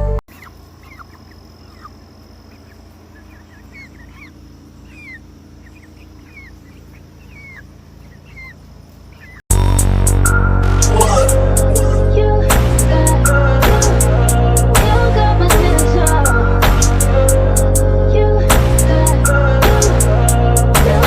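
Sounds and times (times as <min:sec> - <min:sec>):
chickens chirping: 0:00.0 - 0:09.5
steady low hum: 0:00.0 - 0:21.0.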